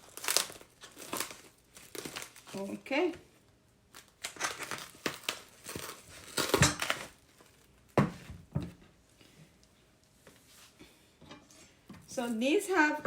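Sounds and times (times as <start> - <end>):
wrapping crinkling and rustling: 0.0 - 8.0, 12.1 - 13.0.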